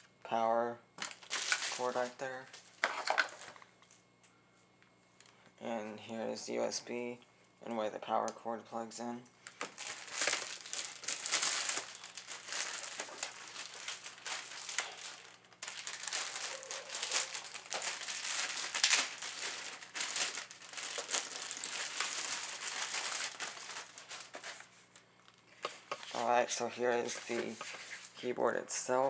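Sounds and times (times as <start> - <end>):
plastic packaging crinkling: 1.0 - 4.0, 9.4 - 28.2.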